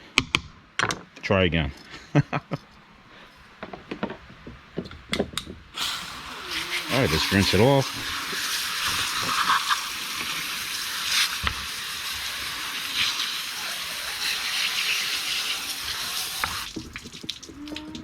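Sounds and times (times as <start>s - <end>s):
running water splashing: 5.8s - 18.0s.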